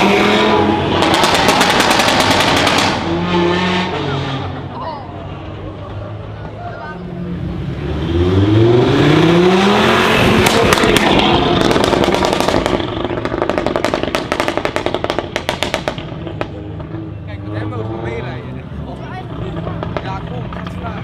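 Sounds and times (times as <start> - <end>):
exhaust crackles and pops: 0.0 - 3.1, 8.5 - 21.0
car engine accelerating hard: 0.0 - 21.0.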